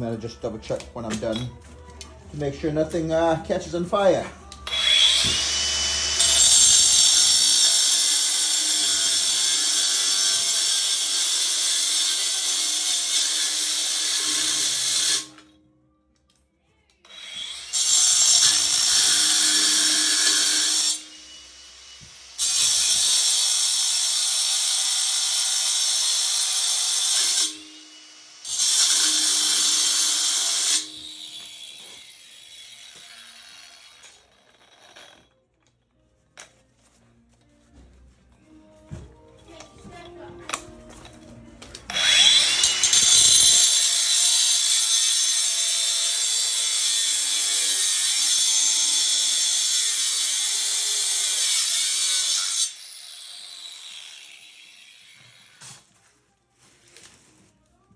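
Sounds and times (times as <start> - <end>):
electric grinder cutting steel: 4.0 - 15.4, 17.1 - 35.3, 41.8 - 55.8.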